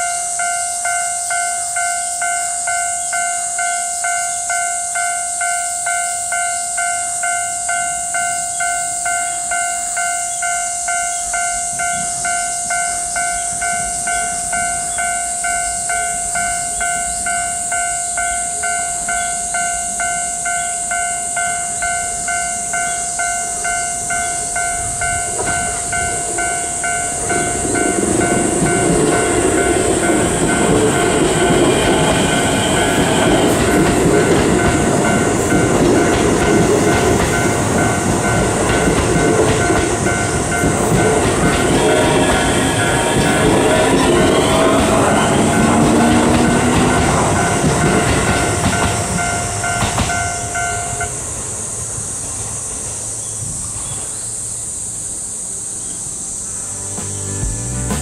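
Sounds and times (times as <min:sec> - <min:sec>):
crossing warning bell ringing: 0:00.0 - 0:54.2
steady high hiss: 0:00.0 - 0:58.0
train running over crossing: 0:00.0 - 0:58.0.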